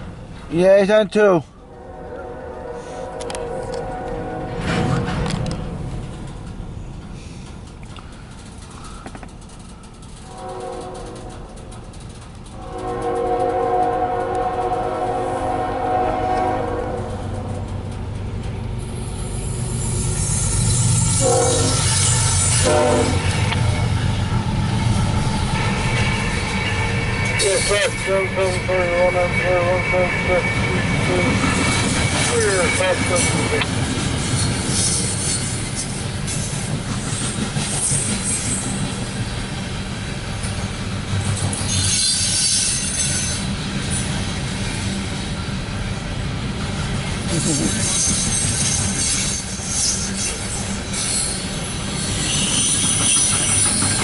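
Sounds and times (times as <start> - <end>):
train rumble and rail hiss: 0.0 - 54.0
locomotive air horn: 1.7 - 4.9, 10.2 - 11.5, 12.6 - 17.4, 21.1 - 23.5, 25.7 - 33.6
high-pitched wheel squeal: 18.9 - 24.1, 25.5 - 33.7, 41.5 - 43.5, 47.5 - 54.0.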